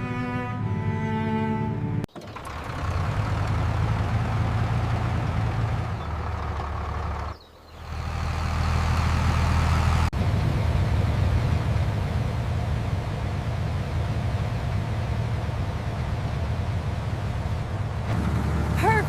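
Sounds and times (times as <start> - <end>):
bowed-string music phrase: 0.0 - 2.0
combine harvester engine rumbling: 0.0 - 19.0.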